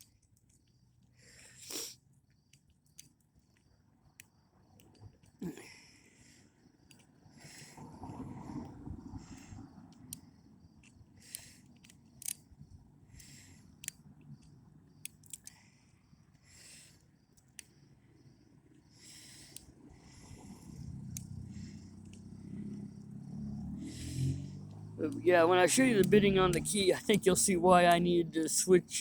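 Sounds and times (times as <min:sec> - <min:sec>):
lock pick clicking and scraping: 0:11.3 - 0:12.5, 0:13.8 - 0:15.6.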